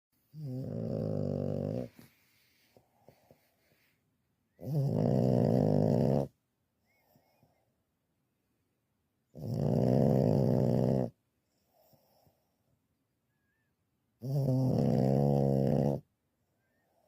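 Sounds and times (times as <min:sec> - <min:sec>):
dog snoring: 0:00.3 - 0:02.2, 0:04.6 - 0:06.4, 0:09.3 - 0:12.3, 0:14.2 - 0:16.1.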